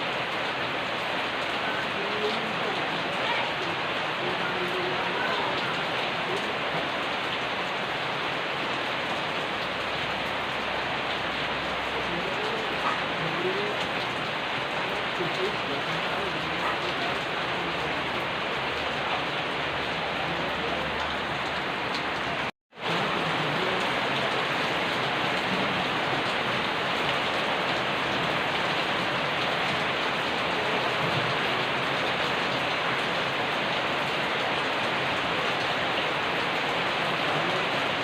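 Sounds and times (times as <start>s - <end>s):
heavy rain pattering: 0.0s - 38.0s.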